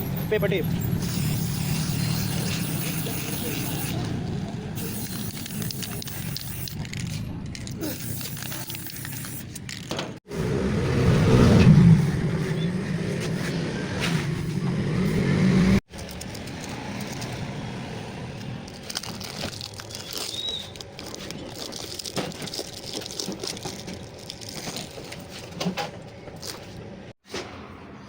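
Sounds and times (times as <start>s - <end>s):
objects and tape being handled: 1.0s - 10.2s, 18.3s - 27.4s.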